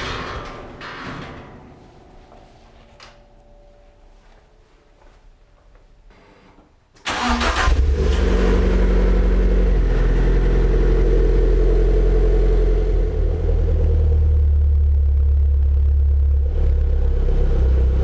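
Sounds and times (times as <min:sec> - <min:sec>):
car engine starting and idling: 0:07.0 - 0:18.0.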